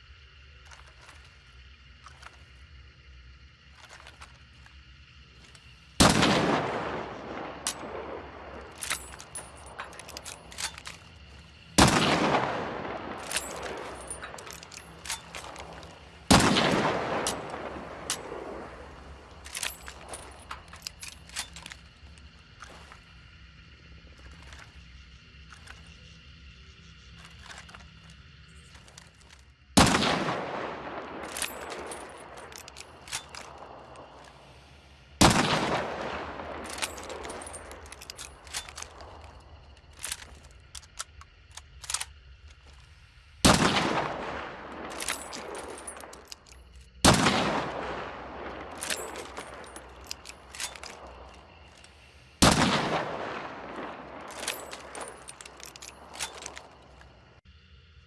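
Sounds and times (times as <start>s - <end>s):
rifle action clicks and rattles: 0.6s - 2.6s, 3.7s - 4.8s, 5.4s - 23.2s, 24.2s - 24.8s, 25.4s - 26.0s, 27.1s - 34.6s, 35.2s - 42.9s, 43.5s - 57.2s
rifle shots echoing: 6.0s - 11.0s, 11.7s - 21.6s, 29.8s - 33.8s, 35.2s - 39.3s, 43.4s - 46.4s, 47.0s - 51.1s, 52.4s - 56.7s.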